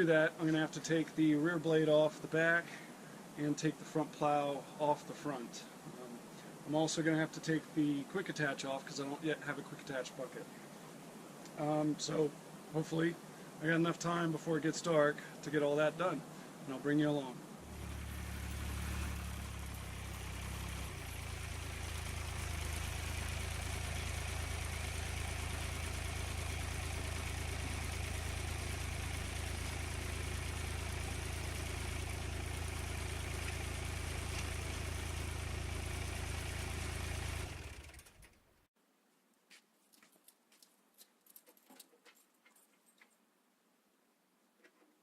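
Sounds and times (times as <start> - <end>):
tractor engine idling: 17.6 - 38.3.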